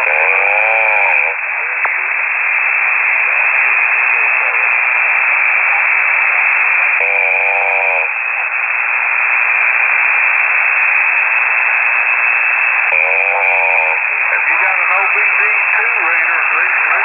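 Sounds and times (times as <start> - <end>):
voice through radio static: 0.0 - 8.7, 11.8 - 17.0
radio static and hiss: 0.0 - 17.0.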